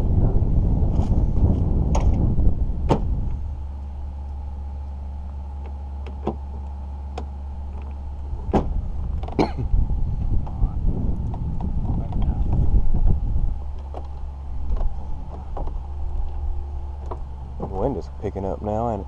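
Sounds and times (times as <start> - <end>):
rough gusty noise: 0.0 - 5.2, 7.5 - 18.8
low motor hum: 0.0 - 19.0
sharp clicks and knocks: 5.6 - 9.5, 13.7 - 16.4, 17.0 - 17.9.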